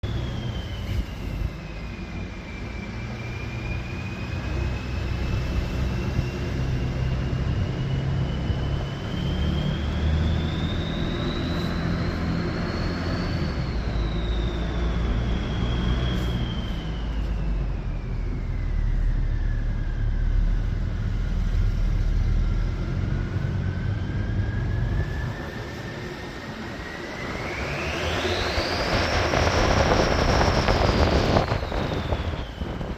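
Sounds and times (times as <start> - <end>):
diesel engine low rumble: 0.0 - 32.9
turbo whistle: 0.1 - 20.5.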